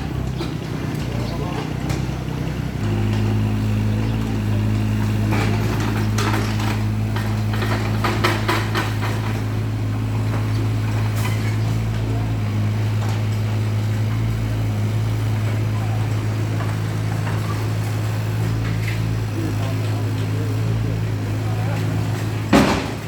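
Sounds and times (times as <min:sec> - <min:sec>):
diesel engine running: 0:00.0 - 0:23.0
sharp knocks: 0:05.1 - 0:09.6, 0:22.5 - 0:23.0.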